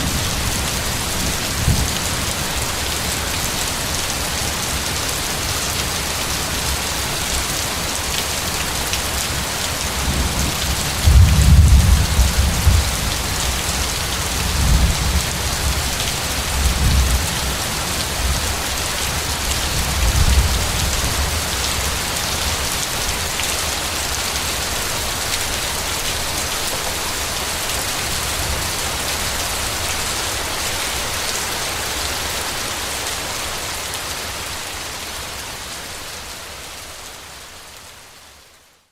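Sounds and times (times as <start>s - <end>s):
heavy rainfall: 0.0s - 38.9s.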